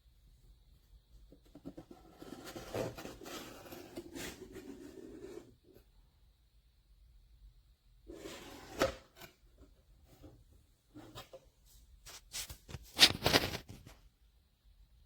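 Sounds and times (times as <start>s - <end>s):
rustling and handling noises: 8.1s - 14.1s.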